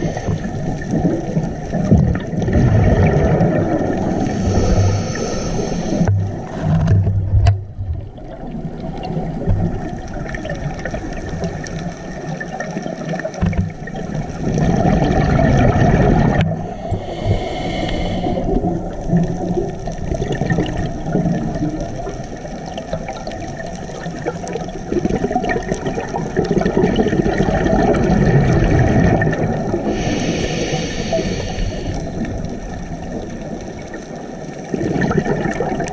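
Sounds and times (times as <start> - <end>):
regulator inhale hiss: 0.0 - 0.8, 4.0 - 6.2, 16.5 - 18.8, 29.8 - 32.6
underwater exhaled bubbles gurgling: 0.0 - 35.9.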